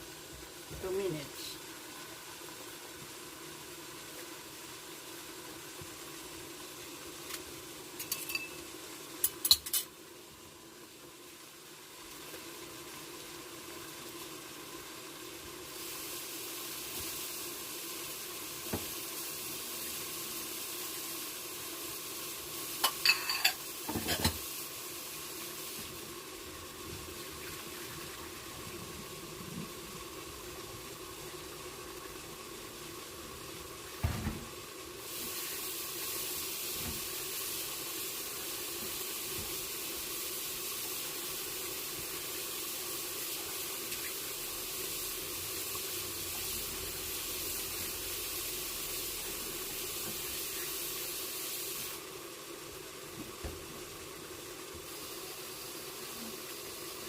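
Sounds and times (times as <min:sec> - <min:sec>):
stir-fry sizzling in a pan: 0:00.0 - 0:57.0
utensils clinking on pan: 0:08.0 - 0:09.9, 0:22.8 - 0:24.4.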